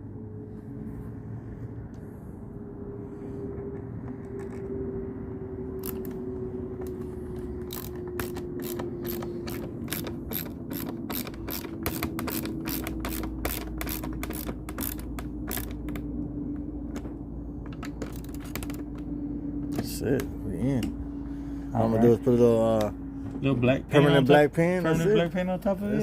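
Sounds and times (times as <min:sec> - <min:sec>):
steady low hum: 0:00.0 - 0:26.0
hand ratchet clicking: 0:07.6 - 0:16.0.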